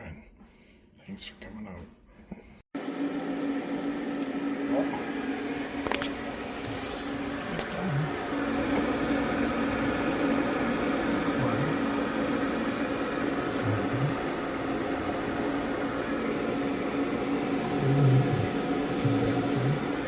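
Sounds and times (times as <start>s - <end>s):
refrigerator fan humming: 2.8s - 20.0s.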